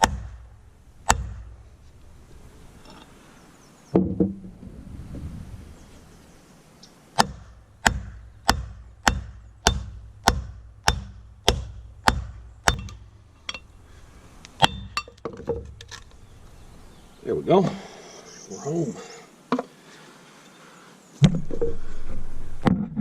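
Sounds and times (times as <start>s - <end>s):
hammer striking metal bearing: 7.2s - 13.7s.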